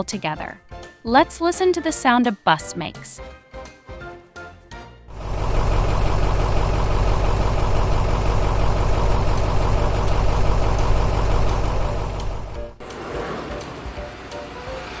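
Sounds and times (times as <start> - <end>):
bus engine running: 5.1 - 15.0.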